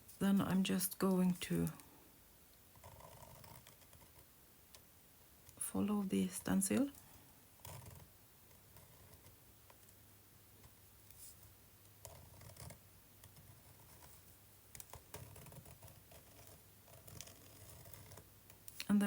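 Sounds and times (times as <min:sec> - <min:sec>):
pen scratching on paper: 0:02.8 - 0:04.2, 0:07.6 - 0:09.4, 0:11.2 - 0:14.3, 0:14.9 - 0:18.2.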